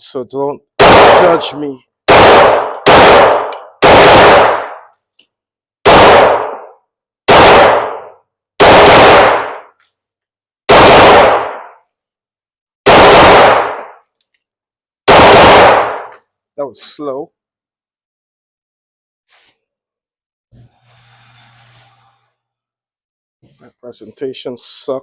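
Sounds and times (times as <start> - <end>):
pistol shots with echo: 0.8 - 4.9, 5.8 - 6.7, 7.3 - 9.7, 10.7 - 11.8, 12.9 - 14.0, 15.1 - 16.1.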